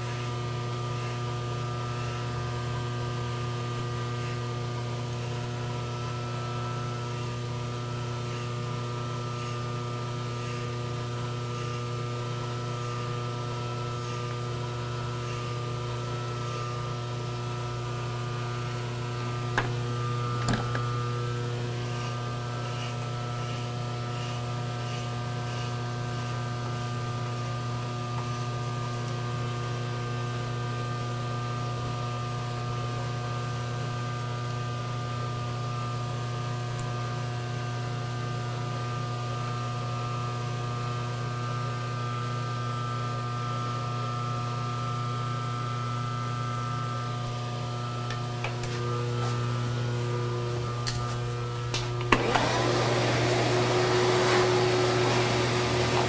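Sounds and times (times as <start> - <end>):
electric motor humming: 0.0 - 32.9, 47.1 - 56.0.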